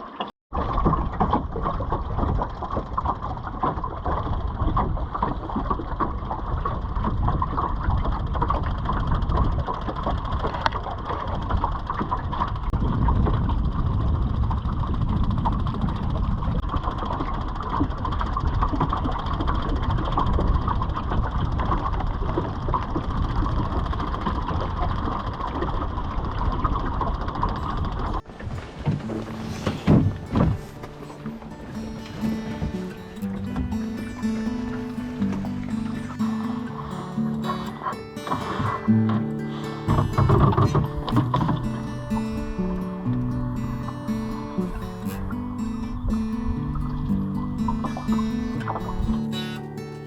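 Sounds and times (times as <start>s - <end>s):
water splashing along hull: 0.0s - 50.0s
wind buffeting microphone: 0.6s - 49.4s.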